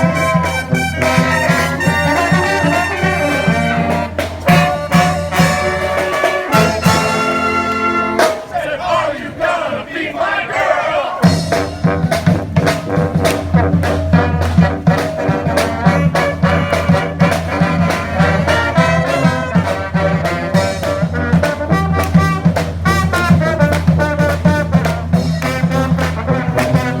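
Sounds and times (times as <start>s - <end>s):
brass band playing: 0.0s - 27.0s
drums keeping a beat: 0.0s - 27.0s.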